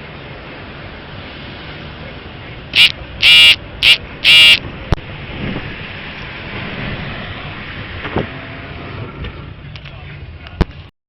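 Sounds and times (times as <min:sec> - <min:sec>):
car horn honking: 0:02.8 - 0:04.6
wind on microphone: 0:04.6 - 0:09.3.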